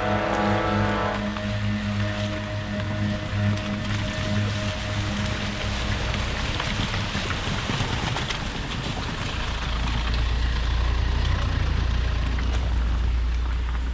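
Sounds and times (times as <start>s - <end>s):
water splashing: 0.0s - 10.5s
car engine rumbling: 0.0s - 13.9s.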